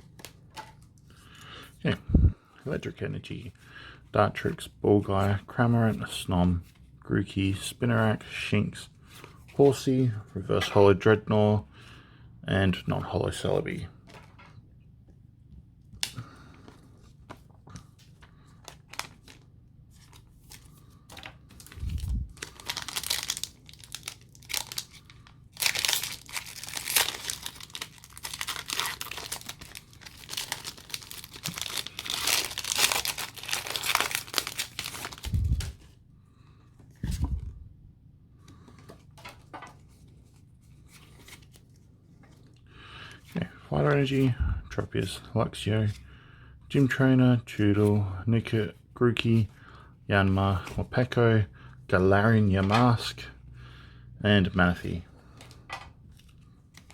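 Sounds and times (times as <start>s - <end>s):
foil wrapper tearing and crinkling: 21.6s - 35.7s.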